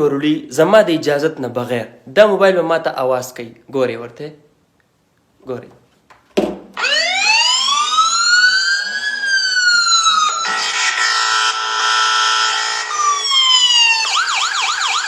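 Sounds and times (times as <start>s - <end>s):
wailing siren from phone: 6.8s - 15.0s
harsh steady blare: 9.8s - 13.2s.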